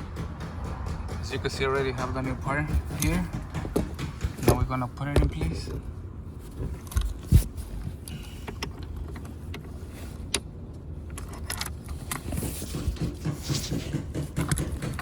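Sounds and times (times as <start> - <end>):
seat belt buckle clicking and rattling: 6.8 - 12.6.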